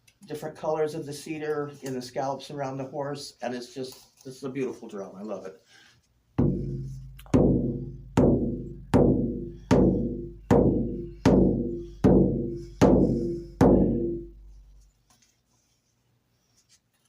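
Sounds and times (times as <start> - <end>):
frame drum strokes ringing: 6.4 - 14.4.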